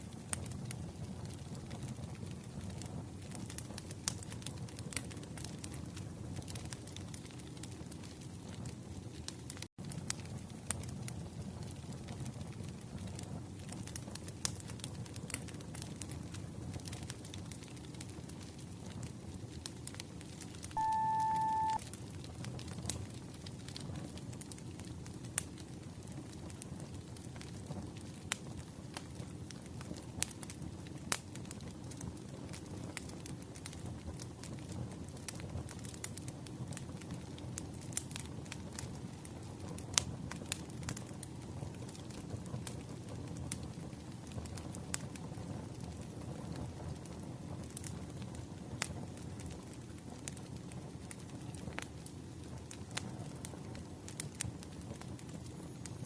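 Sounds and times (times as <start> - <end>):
wood fire crackling: 0.0 - 56.0
electronic timer beep: 20.8 - 21.8.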